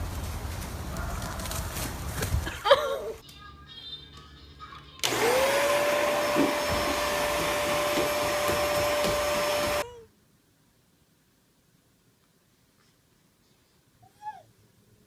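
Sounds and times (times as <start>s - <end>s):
appliance motor whine: 5.0s - 9.8s.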